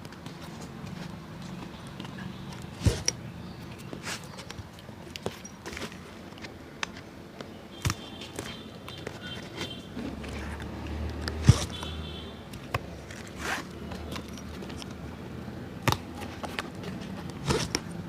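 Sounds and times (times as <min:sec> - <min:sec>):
rasping strokes on shoe: 0:11.4 - 0:11.8.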